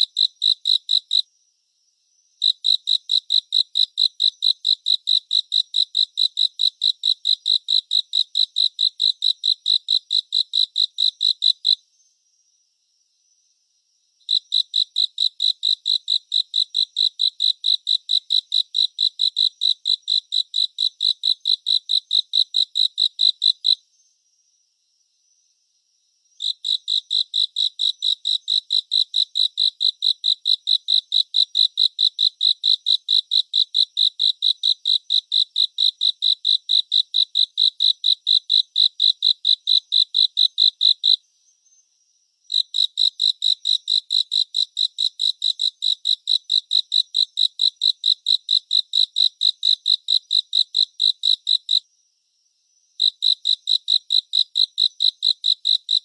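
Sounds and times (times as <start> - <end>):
cricket chirping: 0.0 - 56.0.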